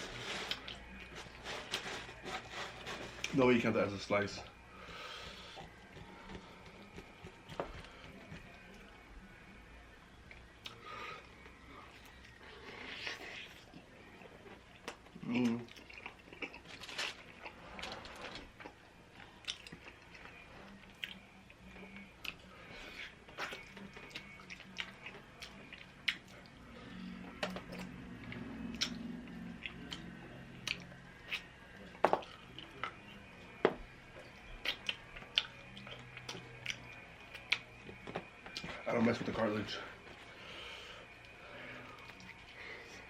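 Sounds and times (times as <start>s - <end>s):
person chewing: 14.5s - 21.2s, 27.7s - 30.0s.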